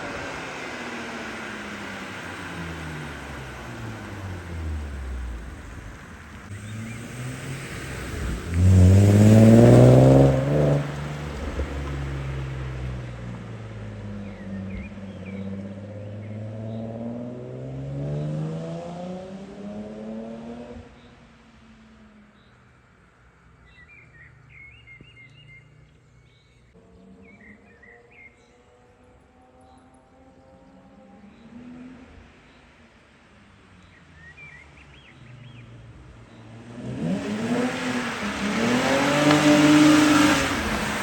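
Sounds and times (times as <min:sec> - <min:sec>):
car engine revving: 0:00.0 - 0:21.0, 0:34.8 - 0:41.0
faint birdsong: 0:00.4 - 0:10.1, 0:12.2 - 0:18.8, 0:19.6 - 0:41.0.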